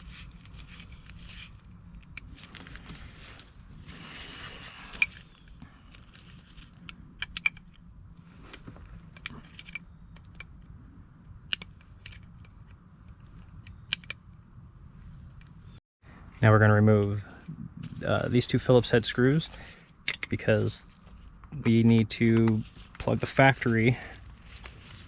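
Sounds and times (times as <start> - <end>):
metal lock parts clicking and rattling: 4.9 - 7.9, 8.5 - 10.8, 11.4 - 14.4, 20.0 - 20.6.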